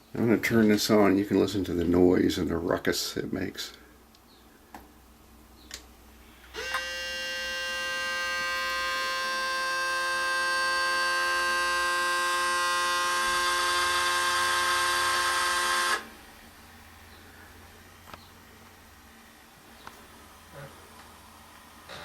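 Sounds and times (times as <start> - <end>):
camcorder whine: 6.4 - 16.3.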